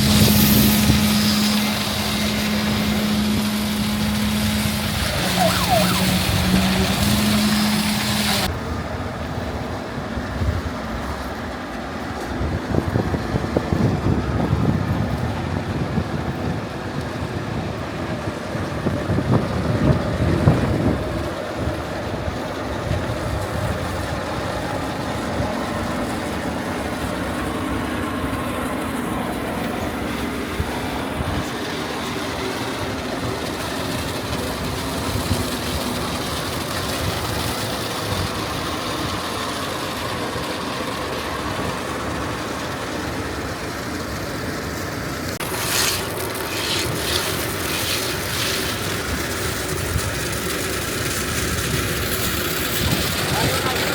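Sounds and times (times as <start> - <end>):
heavy machinery droning: 0.0 - 53.9.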